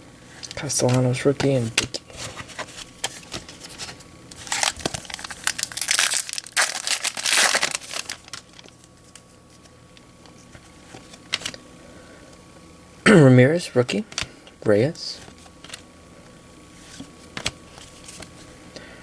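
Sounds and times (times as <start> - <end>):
foil wrapper crinkling and tearing: 2.1 - 9.3.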